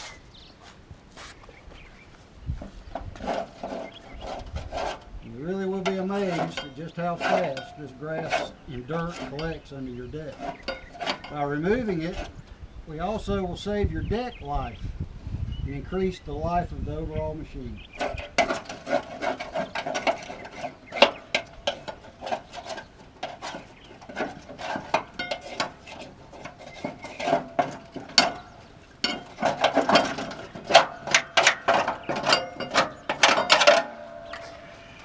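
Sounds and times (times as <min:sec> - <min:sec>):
scraper scraping mower deck: 0:02.6 - 0:12.4, 0:17.9 - 0:35.0.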